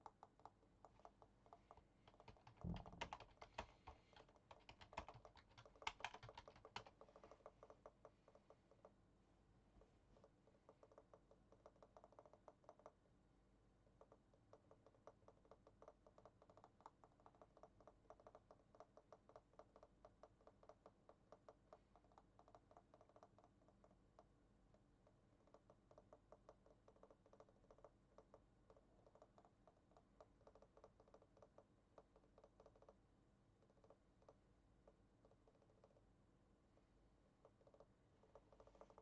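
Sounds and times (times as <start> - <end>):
rapid typing on keyboard: 0.0 - 8.8, 37.4 - 39.0.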